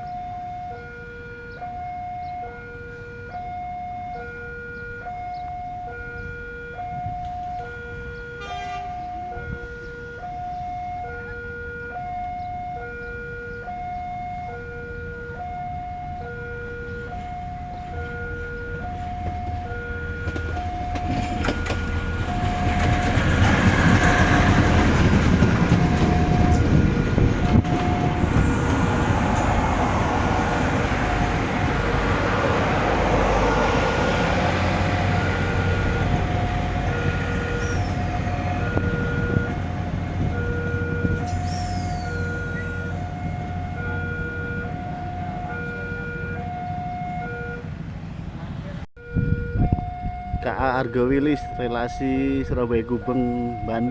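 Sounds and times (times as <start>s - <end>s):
train rumble: 15.1s - 53.9s.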